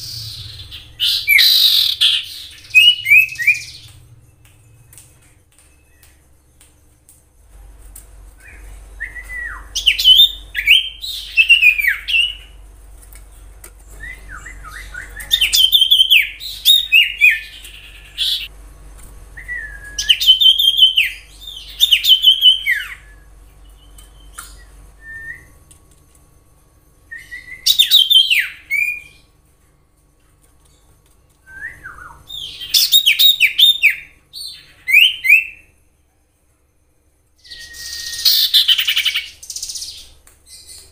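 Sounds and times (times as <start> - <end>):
bird singing whistled notes: 0.0 - 6.6, 8.4 - 12.6, 14.0 - 18.5, 19.4 - 25.6, 27.1 - 29.3, 31.5 - 35.8, 37.4 - 40.9.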